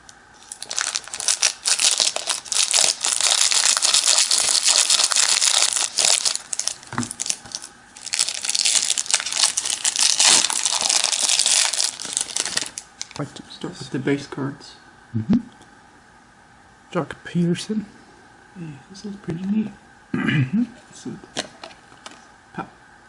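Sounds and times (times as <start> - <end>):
plastic wrapping crinkling: 0.4 - 13.2.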